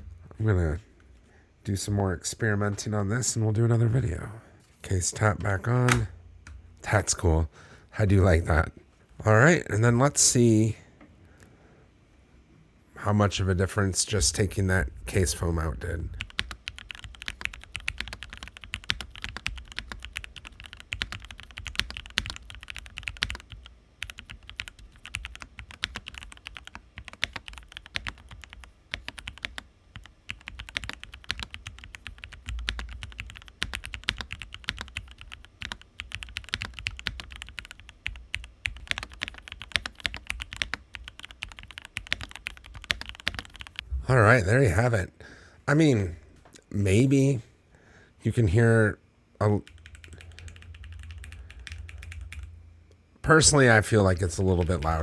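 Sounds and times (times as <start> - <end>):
fast mechanical keyboard typing: 16.2 - 43.8, 49.6 - 52.5, 54.4 - 55.0.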